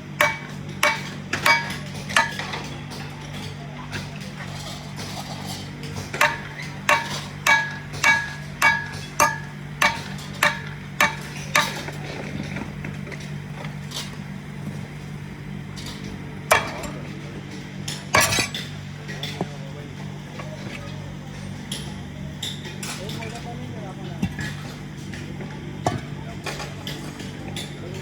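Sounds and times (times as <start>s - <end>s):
hammer ringing on metal: 0.2s - 2.5s, 6.2s - 11.8s.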